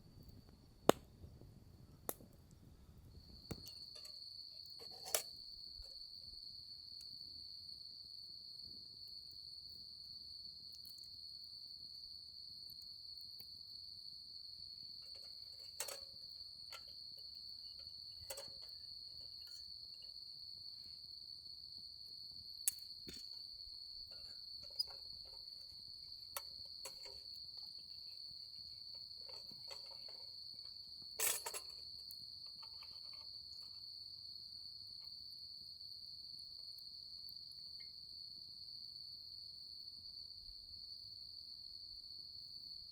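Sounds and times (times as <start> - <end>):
insects trilling: 3.1 - 42.9.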